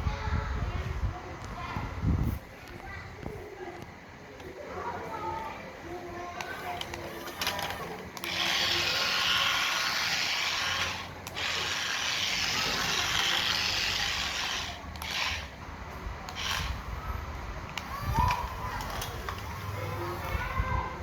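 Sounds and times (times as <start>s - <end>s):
toy car motor whirring: 6.4s - 15.6s, 16.2s - 20.6s.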